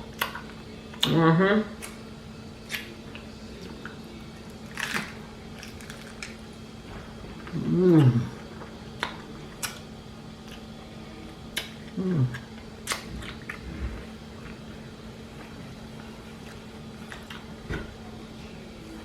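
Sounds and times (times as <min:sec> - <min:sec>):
low background hum: 0:00.0 - 0:19.0
wet chewing: 0:07.4 - 0:17.9
person humming: 0:07.5 - 0:08.4, 0:12.0 - 0:12.4.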